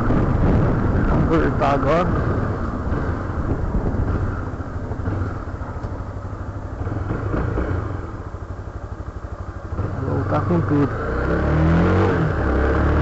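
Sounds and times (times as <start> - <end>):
wind buffeting microphone: 0.0 - 7.4
motorcycle engine droning: 0.0 - 13.0.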